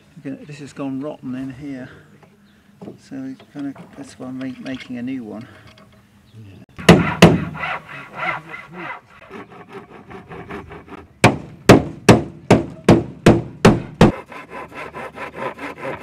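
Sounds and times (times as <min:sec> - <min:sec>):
hammer striking wood: 0:06.8 - 0:07.8, 0:11.2 - 0:14.2.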